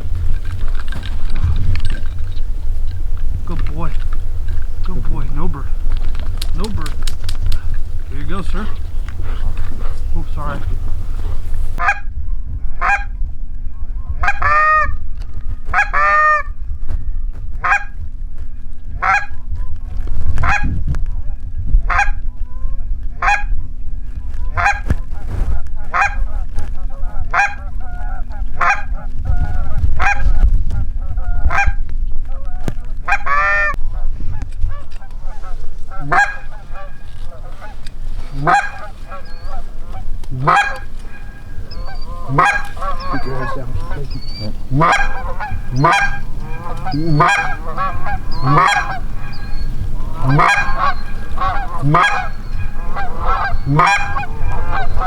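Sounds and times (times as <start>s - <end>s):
low rumble: 0.0s - 11.8s
goose honking: 0.0s - 11.9s, 33.1s - 55.0s.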